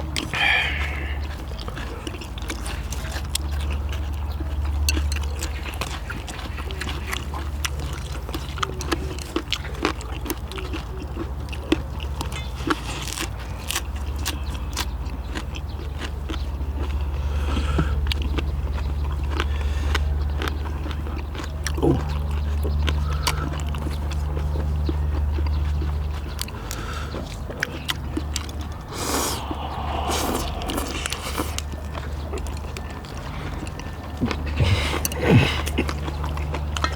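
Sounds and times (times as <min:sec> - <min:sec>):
people chewing food: 0:00.0 - 0:36.9
wet mouth clicks and smacks: 0:16.3 - 0:36.9
steady low hum: 0:26.6 - 0:36.9.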